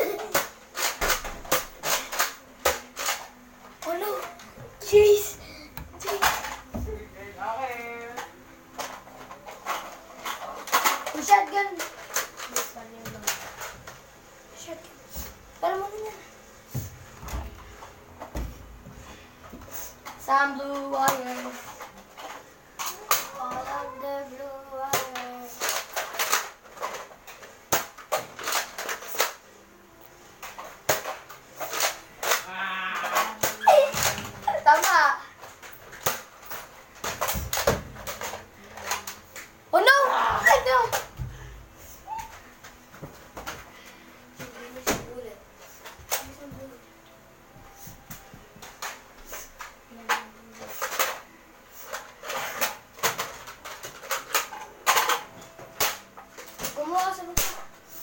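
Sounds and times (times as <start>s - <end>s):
toy blasters clacking and snapping: 0.0s - 4.2s, 8.8s - 13.6s, 24.8s - 29.4s, 30.4s - 41.1s, 48.6s - 51.2s, 51.8s - 57.6s.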